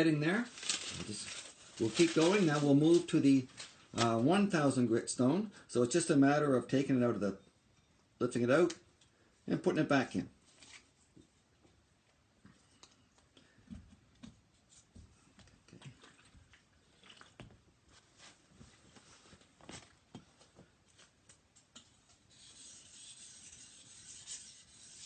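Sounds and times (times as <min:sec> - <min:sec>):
knife rasping on water stone: 0:22.3 - 0:25.0.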